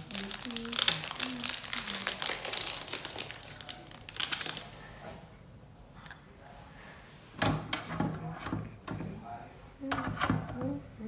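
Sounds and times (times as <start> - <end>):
packaging crinkling: 0.0 - 4.9.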